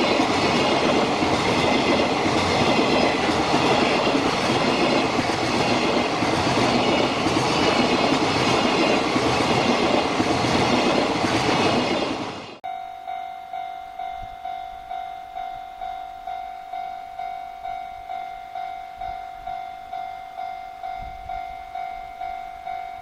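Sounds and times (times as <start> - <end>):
freight train wheels rumbling: 0.0 - 12.6.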